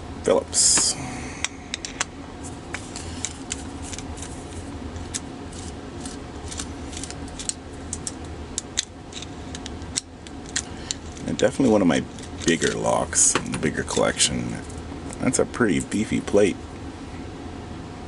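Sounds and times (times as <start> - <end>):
steady low hum: 0.0 - 18.0
small metal clicks and scrapes: 5.0 - 12.8.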